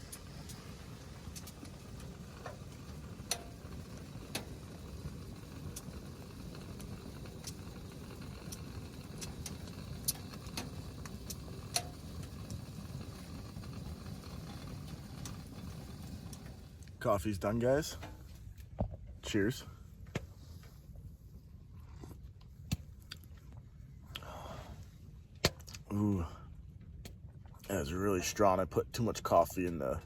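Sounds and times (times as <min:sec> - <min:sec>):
wood stove fire rushing: 0:00.0 - 0:18.3
fire crackles and pops: 0:00.0 - 0:21.4, 0:22.4 - 0:24.2, 0:24.8 - 0:26.0.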